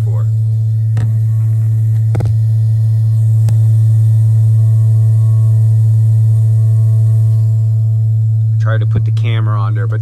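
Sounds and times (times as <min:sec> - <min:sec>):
water heater deep moaning drone: 0:00.0 - 0:10.0.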